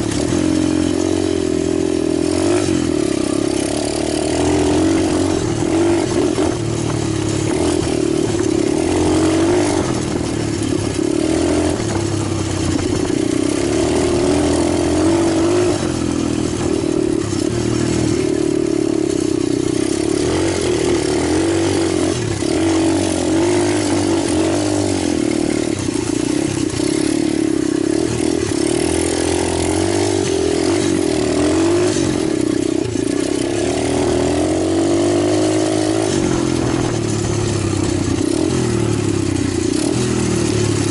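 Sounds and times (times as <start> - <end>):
pit bike engine running: 0.0 - 40.9.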